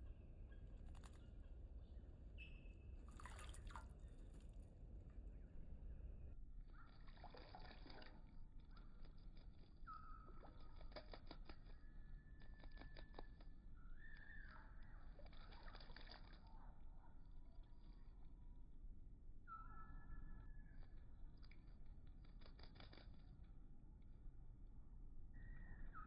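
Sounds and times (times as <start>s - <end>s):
bird splashing in water: 3.0s - 4.4s, 6.8s - 9.7s, 15.1s - 16.4s.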